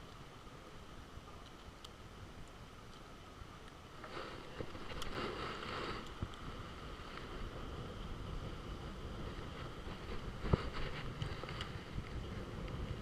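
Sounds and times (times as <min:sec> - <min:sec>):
wind buffeting microphone: 0:04.2 - 0:13.0.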